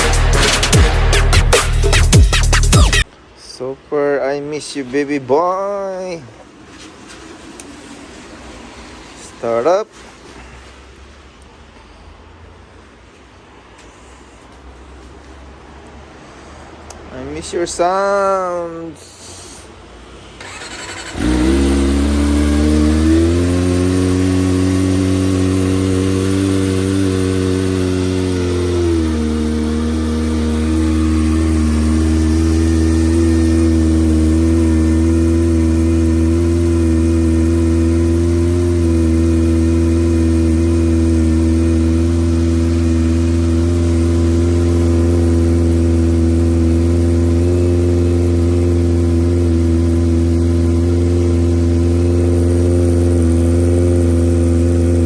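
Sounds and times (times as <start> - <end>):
motorcycle engine starting and idling: 20.4 - 55.0.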